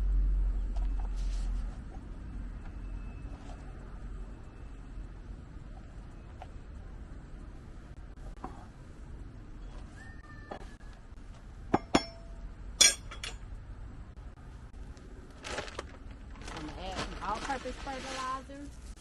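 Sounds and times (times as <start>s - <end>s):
short rustle: 15.4s - 19.0s.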